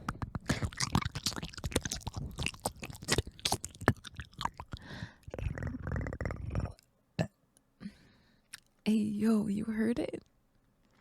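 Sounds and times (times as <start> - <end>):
chewing clicks and crunches: 0.0 - 6.9.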